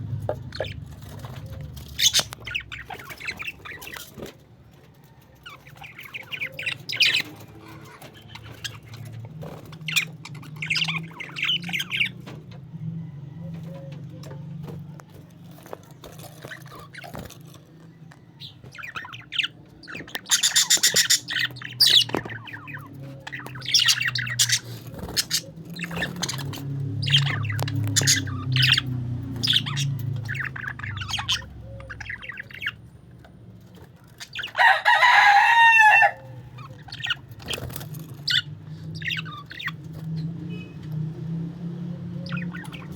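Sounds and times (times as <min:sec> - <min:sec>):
parakeets chirping and chattering: 0:00.0 - 0:42.9
parakeet squawk: 0:00.2 - 0:04.1, 0:05.4 - 0:09.2, 0:09.8 - 0:12.2, 0:18.4 - 0:32.8, 0:34.2 - 0:40.6, 0:42.2 - 0:42.9.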